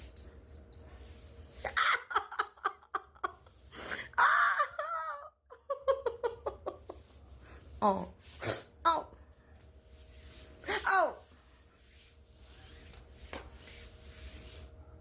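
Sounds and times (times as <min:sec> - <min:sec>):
woman laughing: 0:01.6 - 0:07.2.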